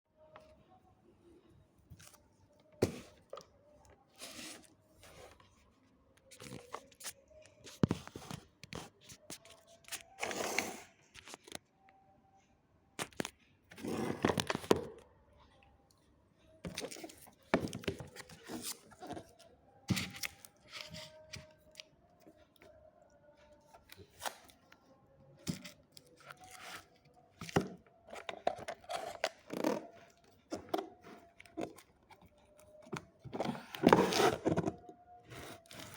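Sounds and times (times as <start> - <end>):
cardboard and plastic tearing: 33.4 - 35.9.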